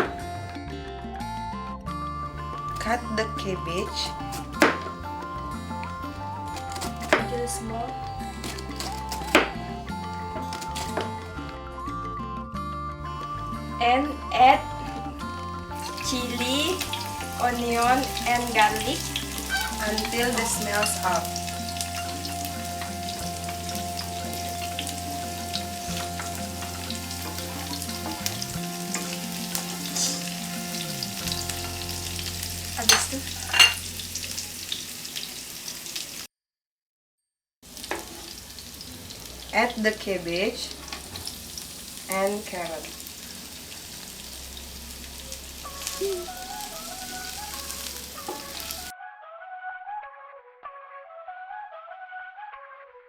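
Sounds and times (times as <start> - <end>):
flute-like background melody: 0.0 - 34.6, 45.3 - 53.0
food sizzling in oil: 15.2 - 36.3, 37.7 - 48.9
spatula scraping a pan: 18.2 - 23.0.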